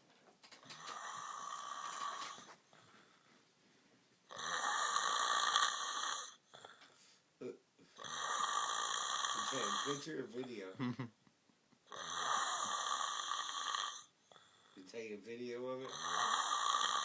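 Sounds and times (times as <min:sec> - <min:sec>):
man snoring: 0:00.8 - 0:02.5, 0:04.3 - 0:06.7, 0:08.0 - 0:10.2, 0:11.9 - 0:14.9, 0:15.8 - 0:17.0.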